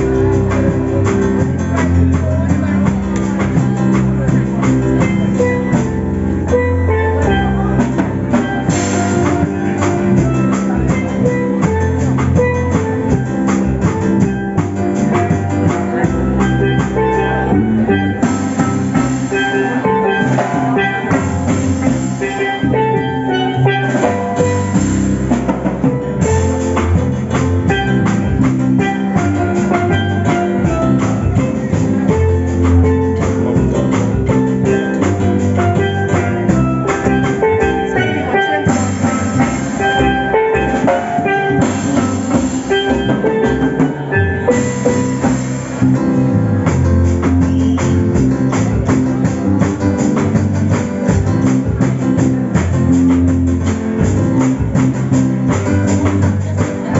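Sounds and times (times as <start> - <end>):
steady drum beat: 0.0 - 56.9.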